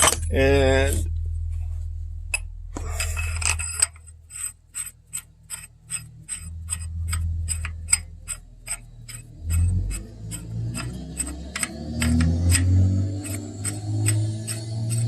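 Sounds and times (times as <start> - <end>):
low steady hum: 0.0 - 15.0
hand ratchet clicking: 3.4 - 15.0.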